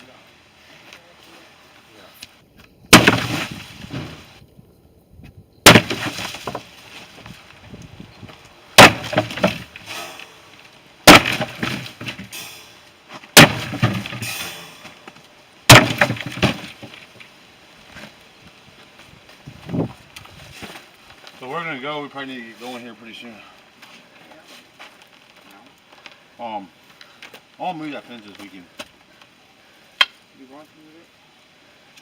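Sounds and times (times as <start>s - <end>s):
breaking material clattering: 2.9s - 4.3s, 5.6s - 7.3s, 8.8s - 10.3s, 11.1s - 12.3s, 13.4s - 14.9s, 15.7s - 17.2s
hard blows: 8.8s - 15.1s.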